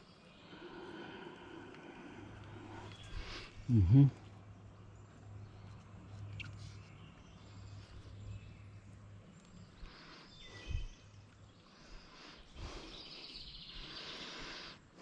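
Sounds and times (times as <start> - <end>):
faint bird chirps: 5.0 - 14.8.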